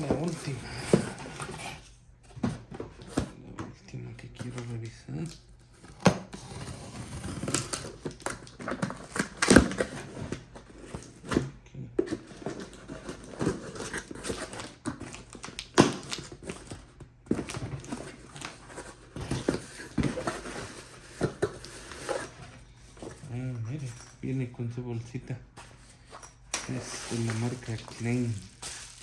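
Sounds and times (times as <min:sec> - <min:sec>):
packaging rustling with clicks: 0:12.1 - 0:24.0, 0:25.7 - 0:29.0.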